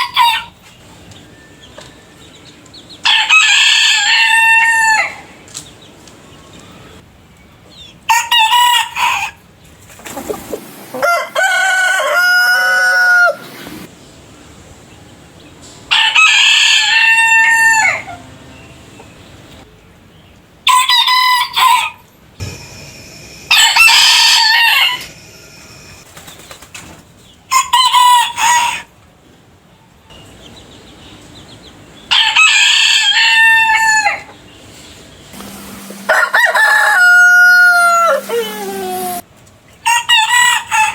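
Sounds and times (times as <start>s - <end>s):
roosters crowing: 3.0s - 5.4s, 8.1s - 9.4s, 10.1s - 13.9s, 15.9s - 18.3s, 20.6s - 26.0s, 32.0s - 34.4s, 35.4s - 39.2s, 39.8s - 40.9s.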